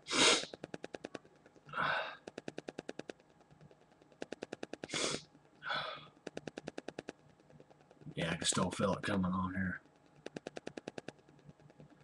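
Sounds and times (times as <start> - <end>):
rapid clicks: 0.0 - 12.0
man breathing noisily: 4.9 - 6.1.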